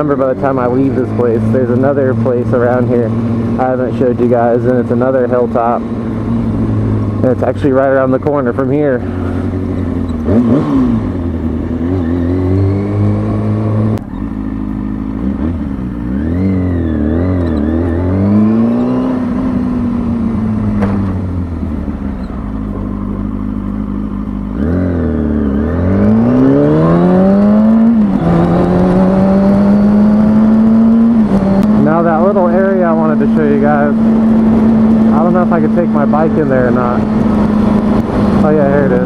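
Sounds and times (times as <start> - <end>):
motorcycle engine revving: 0.0 - 39.0
wind rumble on microphone: 36.3 - 39.0.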